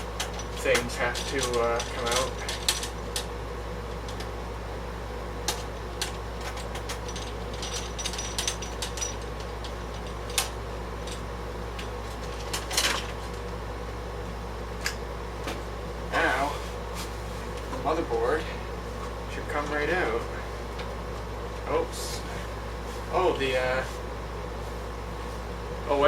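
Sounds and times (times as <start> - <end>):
steady low hum: 0.0 - 26.0
scraping rustle: 16.2 - 18.0.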